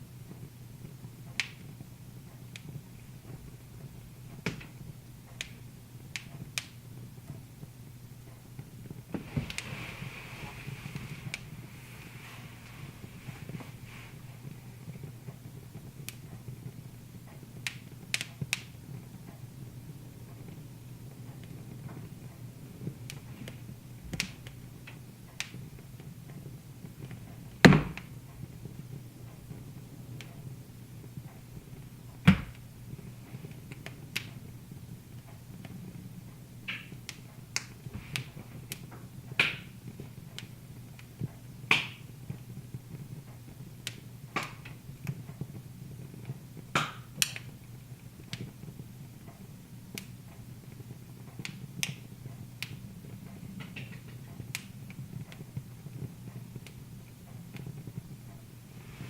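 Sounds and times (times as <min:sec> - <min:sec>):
fire hissing: 0:00.0 - 0:59.0
low steady hum: 0:00.0 - 0:59.0
wood fire crackling: 0:00.0 - 0:59.0.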